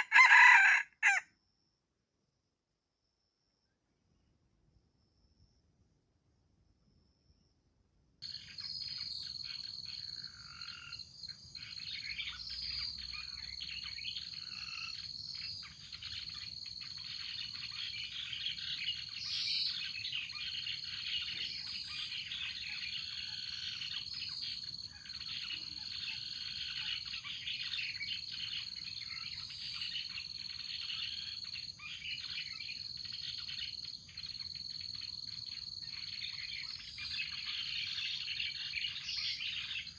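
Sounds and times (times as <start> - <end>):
birds chirping and calling: 0.0 - 1.2, 11.6 - 39.9
high-pitched insect trill: 8.3 - 39.9.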